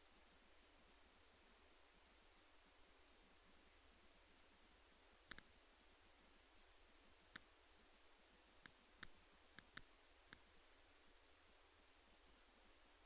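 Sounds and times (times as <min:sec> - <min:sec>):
sharp short clicks: 0:08.6 - 0:10.4.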